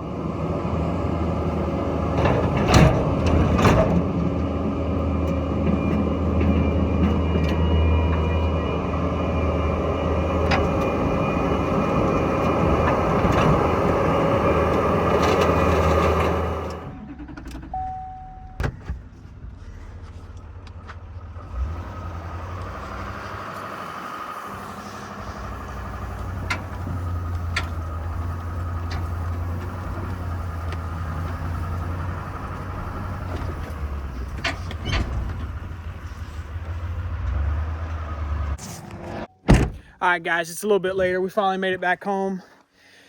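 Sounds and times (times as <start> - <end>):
skid steer engine running: 0.0 - 18.1, 19.6 - 39.2
vehicle door shutting: 14.7 - 19.1, 32.5 - 37.3, 38.5 - 39.9
short steady beep: 17.8 - 18.6.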